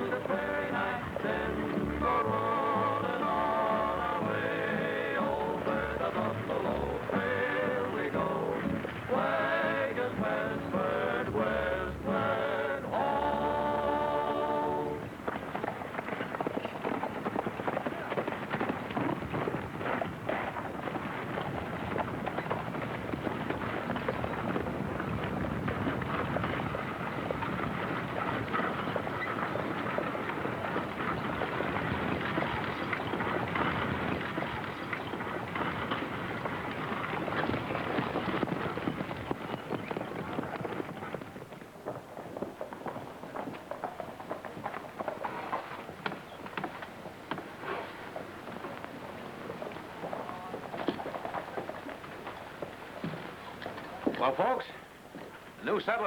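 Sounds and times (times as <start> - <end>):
person singing: 0.0 - 15.1
horses galloping hoofbeats: 0.0 - 56.0.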